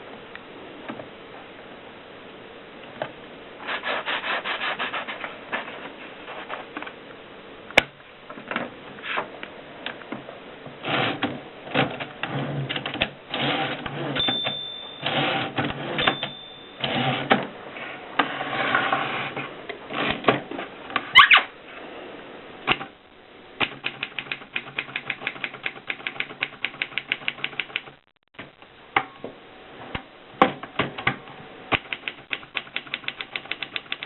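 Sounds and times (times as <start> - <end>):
typewriter keys clacking: 31.7 - 34.0.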